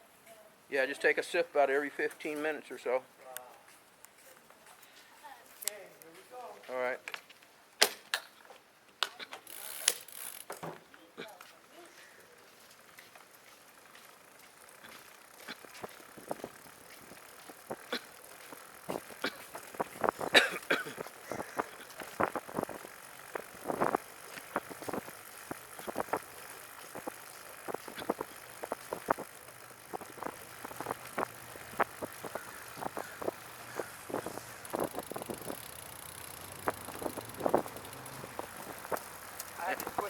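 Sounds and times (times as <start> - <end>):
tires rolling: 12.8 - 40.0
sharp ticking from wheel: 12.9 - 40.0.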